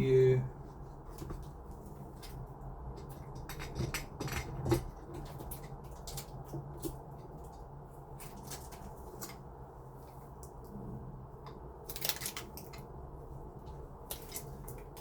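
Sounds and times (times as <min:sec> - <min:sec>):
lock parts clicking and knocking: 0:03.0 - 0:06.5.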